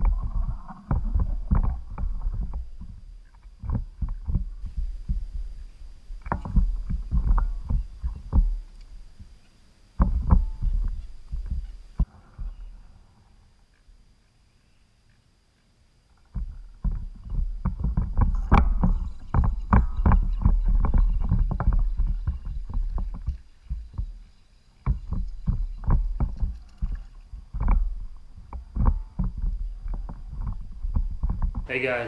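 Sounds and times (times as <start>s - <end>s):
knocks and splashes against hull: 0.0s - 9.3s, 10.0s - 12.6s, 16.3s - 31.7s
low rumble: 0.0s - 9.4s, 16.4s - 24.2s.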